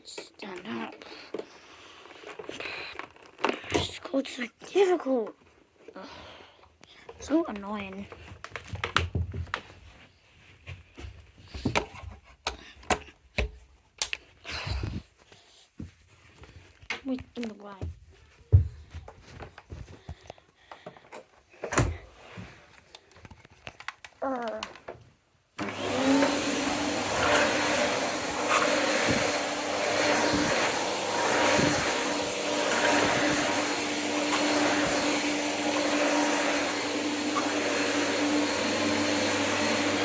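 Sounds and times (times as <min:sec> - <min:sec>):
vacuum cleaner running: 0:25.6 - 0:40.0.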